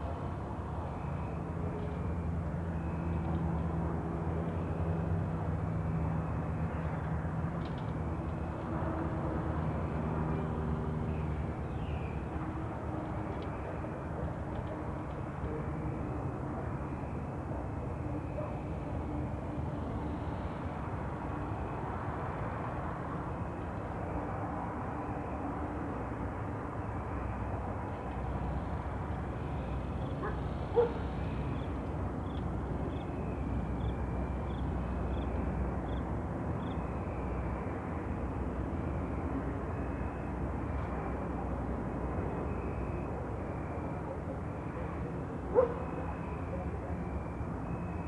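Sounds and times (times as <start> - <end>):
distant traffic rumble: 27.0 - 48.0.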